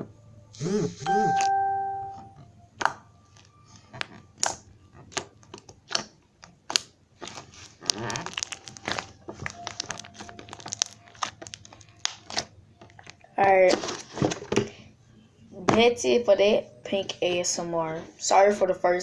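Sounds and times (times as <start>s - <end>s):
sticky pops and crackles: 3.9s - 13.2s
slime squished by hand: 4.0s - 13.2s.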